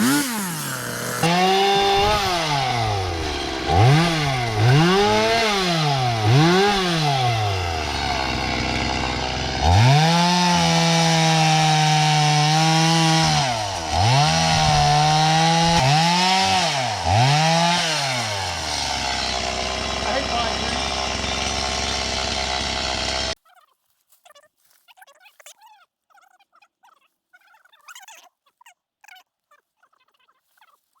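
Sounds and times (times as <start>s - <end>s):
chainsaw revving and cutting wood: 0.0s - 23.4s.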